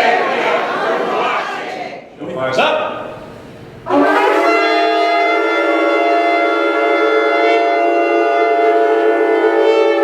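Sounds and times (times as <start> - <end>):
ram's horns blowing long blast: 3.8 - 10.0.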